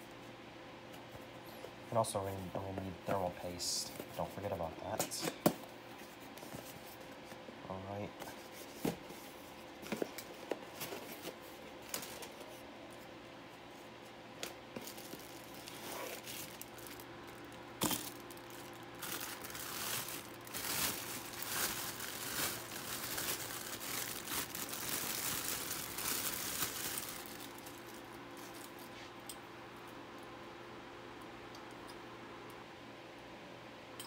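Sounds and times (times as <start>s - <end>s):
packaging crinkling and rustling: 8.2s - 12.6s, 14.4s - 29.0s.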